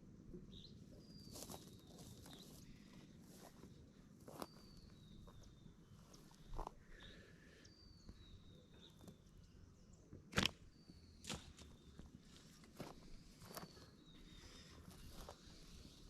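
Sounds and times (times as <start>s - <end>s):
footsteps on forest floor: 1.1s - 7.2s, 11.2s - 16.0s.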